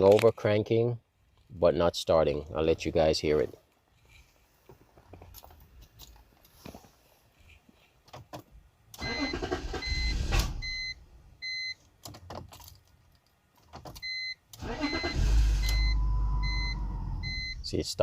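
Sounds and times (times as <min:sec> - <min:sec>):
car starter cranking: 0:09.0 - 0:10.7, 0:14.6 - 0:17.7
dashboard warning chime: 0:14.1 - 0:17.7
car engine firing and running: 0:14.6 - 0:17.6.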